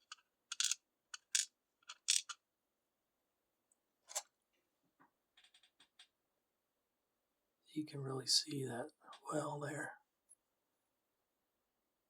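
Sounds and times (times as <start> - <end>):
small metal lock parts clinking: 0.0 - 2.4.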